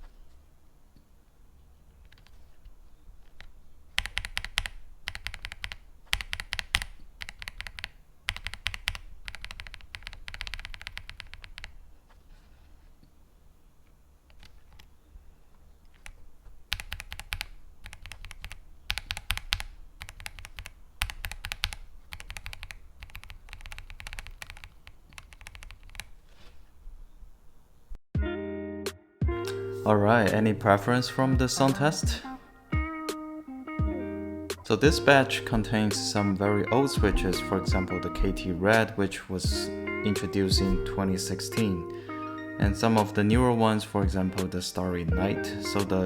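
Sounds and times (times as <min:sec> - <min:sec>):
mechanical keyboard typing: 0:03.2 - 0:11.8, 0:15.9 - 0:26.2.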